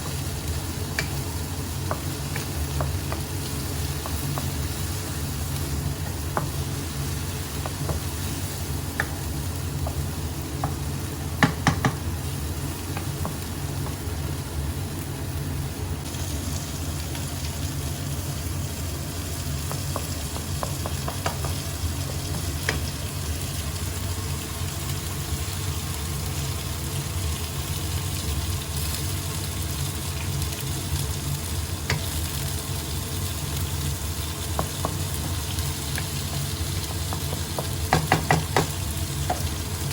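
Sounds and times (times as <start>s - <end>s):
sizzling in a hot pan: 0.0s - 39.9s
utensil clicking against pan: 34.5s - 39.5s.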